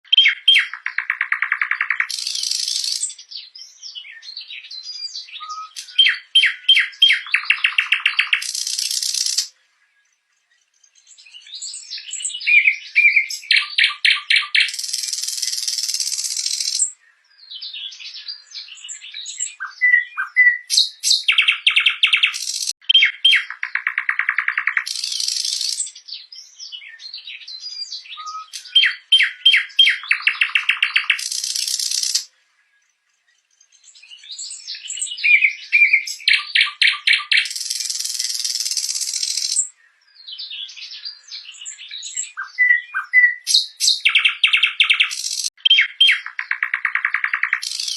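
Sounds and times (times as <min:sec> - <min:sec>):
nightingale singing: 0:00.0 - 0:47.9.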